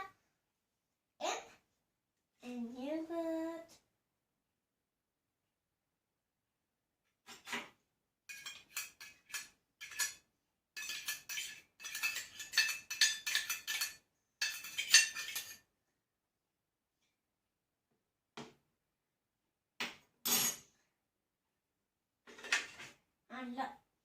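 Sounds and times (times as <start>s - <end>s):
spoon scraping a bowl: 8.3s - 10.2s, 10.8s - 15.7s.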